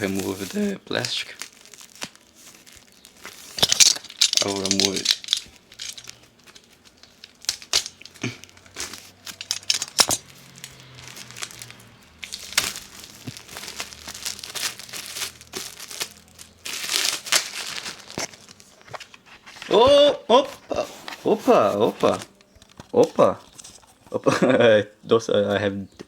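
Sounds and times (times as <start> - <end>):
plastic wrapping tearing and crinkling: 0.0 - 19.8.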